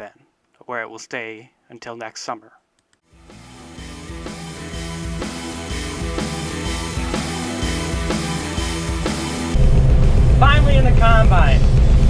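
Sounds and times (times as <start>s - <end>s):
rock music with drum beat: 3.2s - 12.0s.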